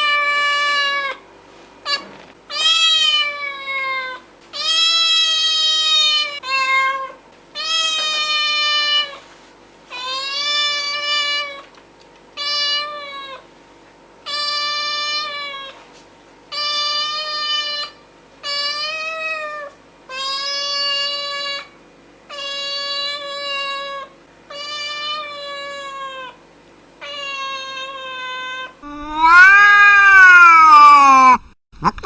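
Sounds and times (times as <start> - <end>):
cat meowing: 1.9 - 9.2, 27.0 - 31.4.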